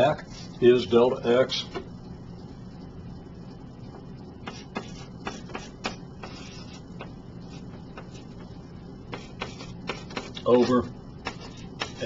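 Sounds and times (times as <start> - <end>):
pen scratching on paper: 4.5 - 6.8, 9.1 - 10.4, 11.2 - 12.0.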